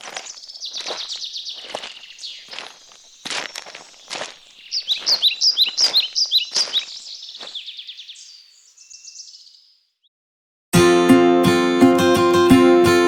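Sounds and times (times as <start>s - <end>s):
short scuffs: 0.0s - 7.6s
bird chirping and trilling: 0.0s - 10.0s.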